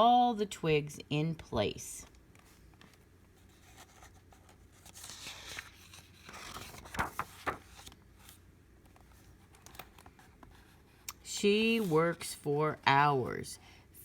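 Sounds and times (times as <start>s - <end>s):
paper crackles: 2.4s - 10.7s
paper rustling: 2.4s - 10.9s.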